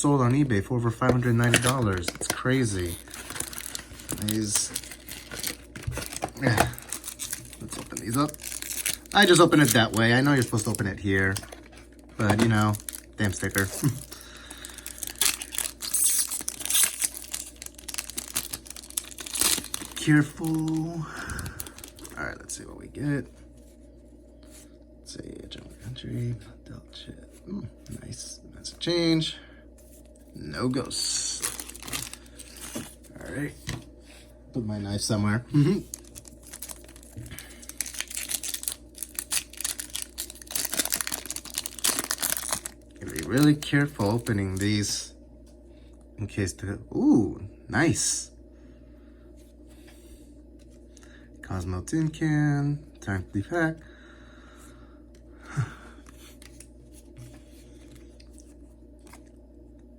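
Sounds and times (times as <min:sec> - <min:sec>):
card packaging crinkling and tearing: 0:00.2 - 0:22.6, 0:30.6 - 0:33.8, 0:35.5 - 0:45.0, 0:56.1 - 0:59.3.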